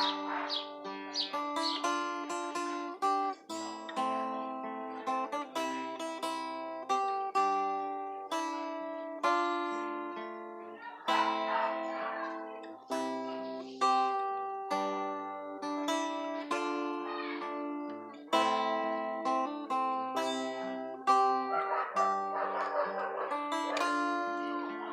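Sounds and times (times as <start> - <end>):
acoustic guitar strummed and plucked: 0.0 - 24.9.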